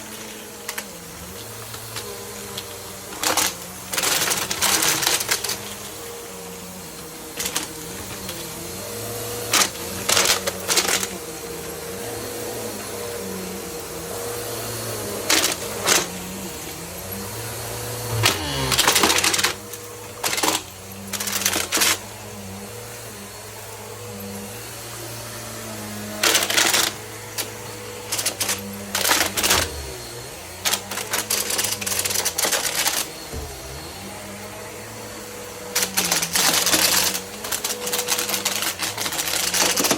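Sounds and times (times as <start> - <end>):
vacuum cleaner humming: 0.0 - 39.9
plastic bricks rattling through nozzle: 35.8 - 39.9.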